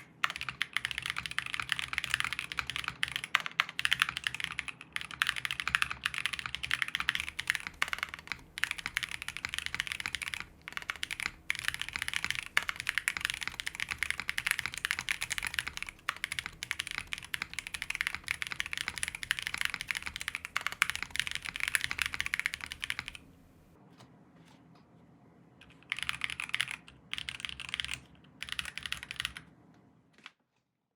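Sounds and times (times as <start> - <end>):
mechanical keyboard typing: 0.0 - 23.3, 25.6 - 29.6.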